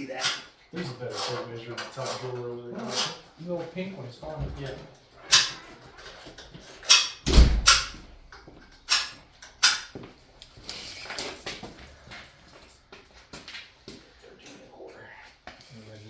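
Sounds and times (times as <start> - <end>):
tools and metal parts clattering: 0.0 - 13.8
heavy deep thump: 7.3 - 8.3.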